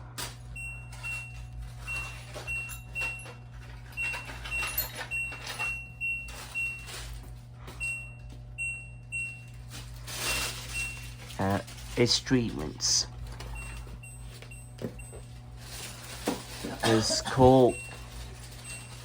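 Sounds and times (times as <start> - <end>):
washing machine panel beeps: 0.5 - 7.1, 7.7 - 9.7, 10.7 - 11.2, 13.5 - 15.5, 16.5 - 19.0.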